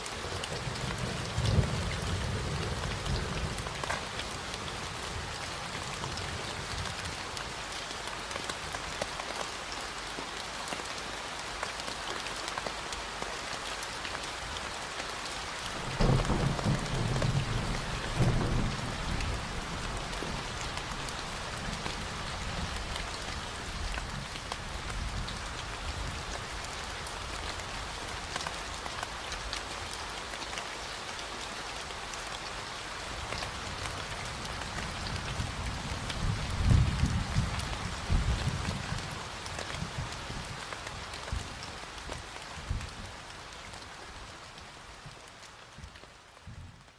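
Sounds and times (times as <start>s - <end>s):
steady rain falling: 0.0s - 46.9s.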